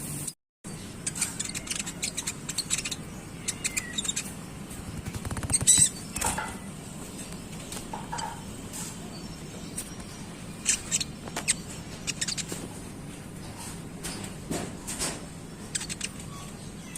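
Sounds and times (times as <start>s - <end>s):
sunbird twittering chirps: 0.7s - 6.4s, 7.1s - 12.5s.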